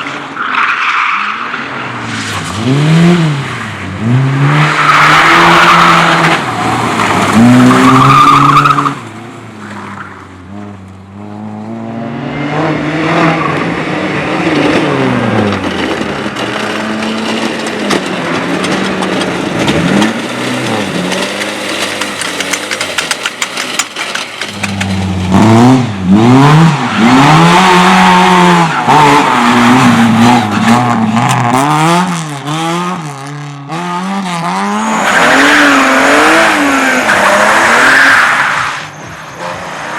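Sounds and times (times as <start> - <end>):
car engine revving hard: 24.8 - 39.9.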